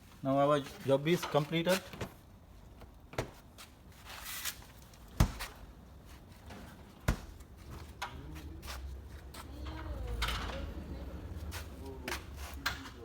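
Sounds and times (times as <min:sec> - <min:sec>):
handling and shuffling noises: 0:00.0 - 0:10.3.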